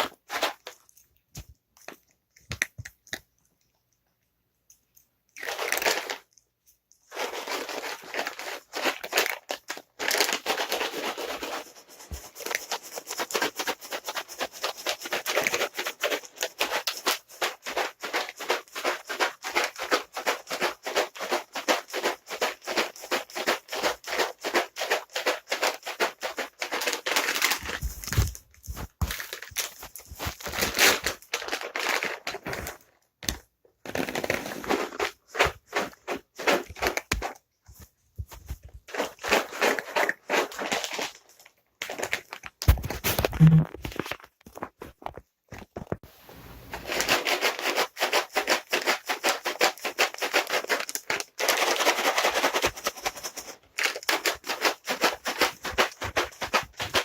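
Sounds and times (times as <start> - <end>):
cat treats rattling in package: 0.0 - 1.1, 5.3 - 6.4, 7.0 - 33.0, 33.9 - 37.8, 38.4 - 44.7, 46.9 - 57.0.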